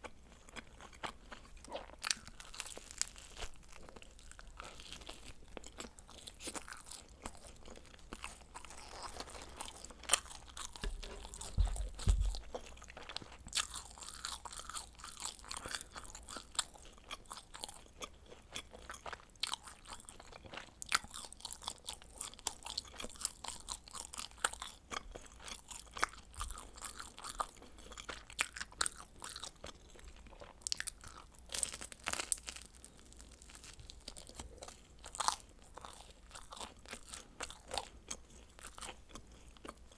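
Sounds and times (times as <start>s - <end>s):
crisp crunching: 1.0s - 16.4s, 30.6s - 37.6s
wet chewing clicks: 10.2s - 17.7s
low thump: 10.6s - 12.6s.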